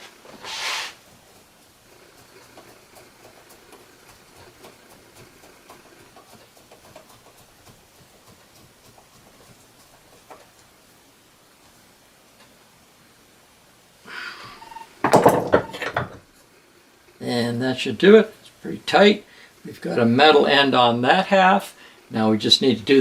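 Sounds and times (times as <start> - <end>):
rustling scrape: 0.0 - 1.1.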